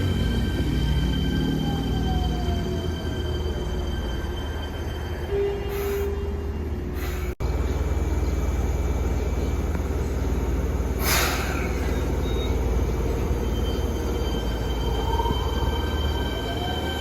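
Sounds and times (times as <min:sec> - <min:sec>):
subway train rumbling and whining: 0:00.0 - 0:17.0
short air hiss: 0:11.0 - 0:11.7.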